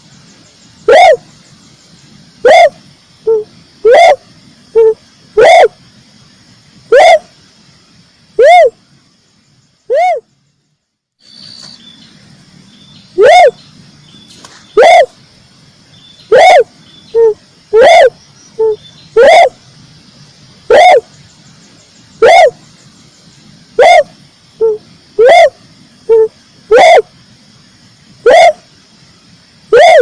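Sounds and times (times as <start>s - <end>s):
faint high hum: 0.0s - 30.0s
dove cooing: 0.9s - 1.2s, 2.4s - 4.2s, 4.8s - 5.8s, 13.2s - 13.6s, 14.8s - 15.2s, 16.3s - 19.6s, 20.7s - 21.1s, 22.2s - 22.6s, 23.8s - 27.1s, 28.2s - 28.6s, 29.7s - 30.0s.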